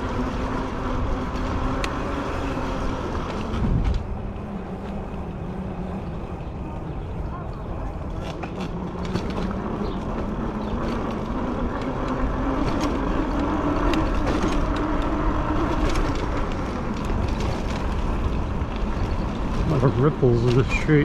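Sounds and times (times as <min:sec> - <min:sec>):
motor hum rising in pitch: 0:00.0 - 0:07.1
bike clicks and rattles: 0:00.0 - 0:21.0
wind rumble on microphone: 0:00.0 - 0:21.0.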